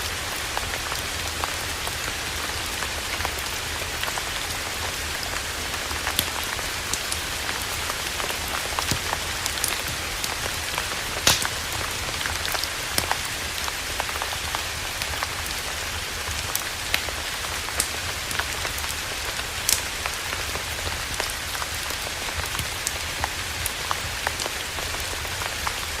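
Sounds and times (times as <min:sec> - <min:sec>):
campfire crackling: 0:00.4 - 0:25.4.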